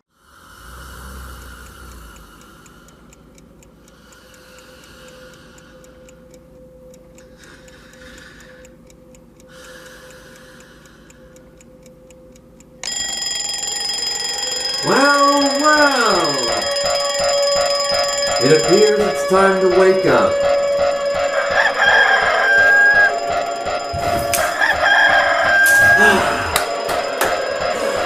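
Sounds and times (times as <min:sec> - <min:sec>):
clock ticking: 0:00.1 - 0:28.0.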